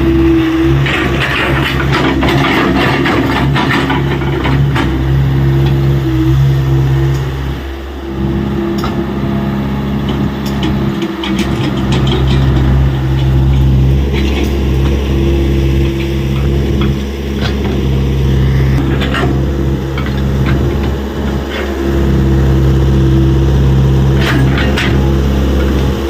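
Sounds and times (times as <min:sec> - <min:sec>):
excavator diesel engine running: 0:00.0 - 0:26.0
knocks and clatter: 0:00.7 - 0:05.8, 0:10.0 - 0:18.0.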